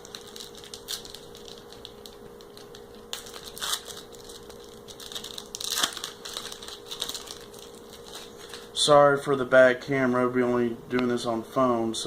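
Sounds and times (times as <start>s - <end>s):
foil wrapper crinkling and tearing: 0.0s - 8.8s.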